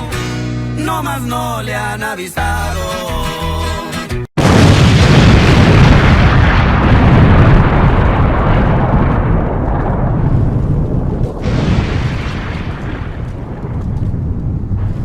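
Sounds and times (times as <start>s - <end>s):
explosion blast: 4.4s - 15.0s.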